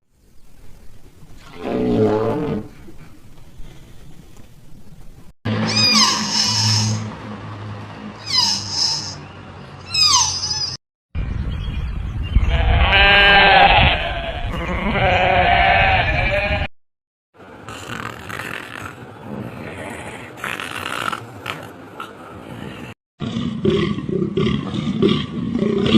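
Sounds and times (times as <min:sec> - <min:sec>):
wavering bleat: 0:12.5 - 0:16.7.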